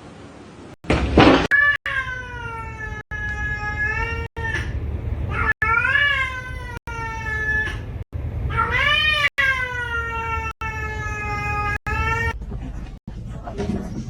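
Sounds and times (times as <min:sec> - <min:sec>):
cat yowling meows: 0:01.5 - 0:04.7, 0:05.3 - 0:07.8, 0:08.5 - 0:12.4.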